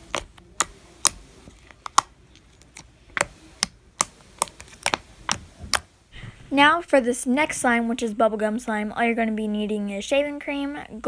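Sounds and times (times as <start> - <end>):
slime clicking and popping: 0.0 - 2.1.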